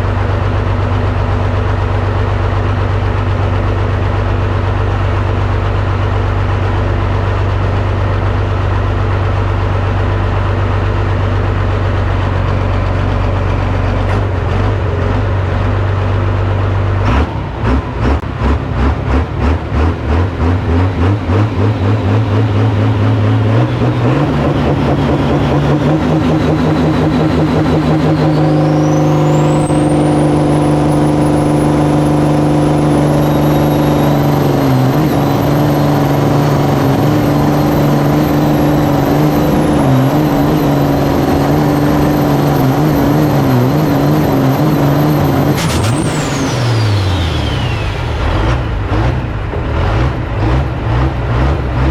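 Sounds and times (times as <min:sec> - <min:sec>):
tractor engine idling and revving: 0:00.0 - 0:51.9
high whine: 0:21.2 - 0:50.4.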